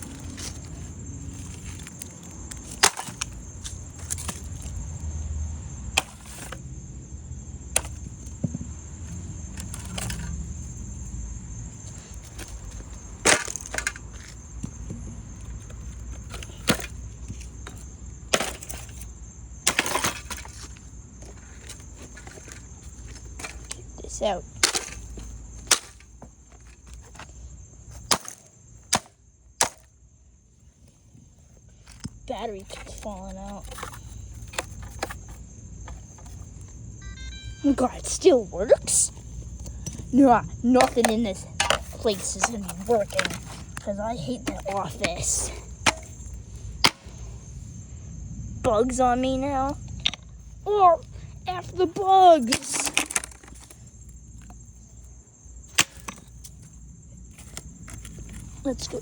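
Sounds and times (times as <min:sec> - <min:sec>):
wooden board striking plastic: 0:45.8 - 0:47.1.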